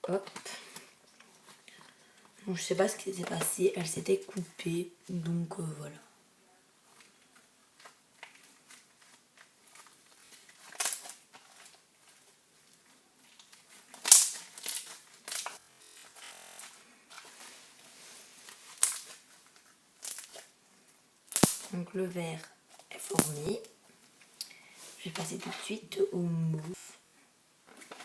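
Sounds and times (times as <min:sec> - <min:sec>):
sharp crackling pops: 0:14.0 - 0:15.6, 0:18.7 - 0:19.2, 0:21.3 - 0:21.8, 0:23.0 - 0:23.8
slime squelching: 0:23.0 - 0:23.7.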